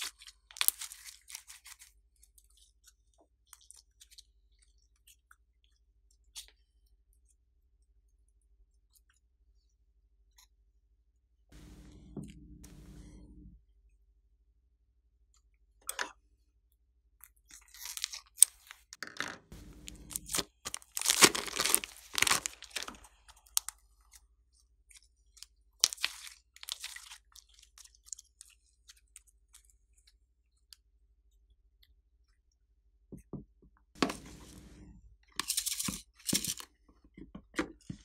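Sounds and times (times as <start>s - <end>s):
slime crackling and crunching: 0.0s - 1.9s, 17.5s - 18.8s, 19.6s - 23.9s, 25.3s - 28.4s.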